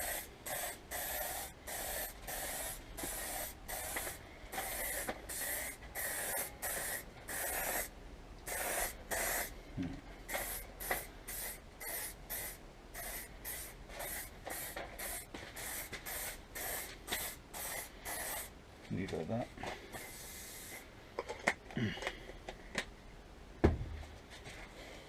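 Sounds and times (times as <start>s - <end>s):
spray can hissing: 0.0s - 7.9s, 8.5s - 9.5s, 10.3s - 18.5s, 19.9s - 20.8s.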